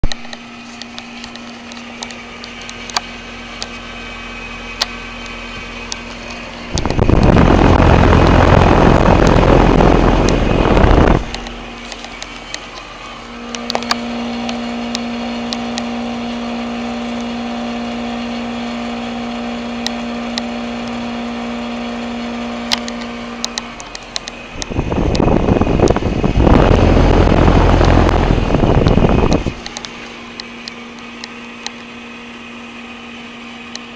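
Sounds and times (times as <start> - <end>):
steady electrical hum: 0.0 - 33.9
loud rush of air: 6.7 - 11.4, 24.4 - 29.7.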